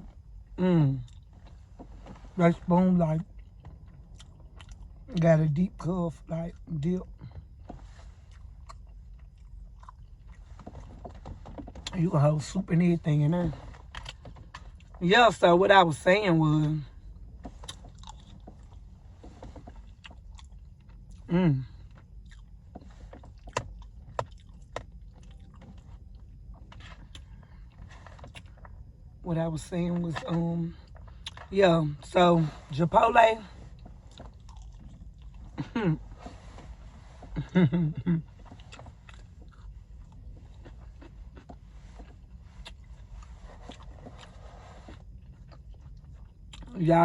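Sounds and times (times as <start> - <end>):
steady low rumble: 0.0 - 47.0
person chewing food: 0.2 - 2.2, 3.2 - 5.1, 7.1 - 11.9, 13.7 - 15.0, 17.2 - 29.2, 30.2 - 31.5, 33.6 - 36.6, 37.2 - 46.8.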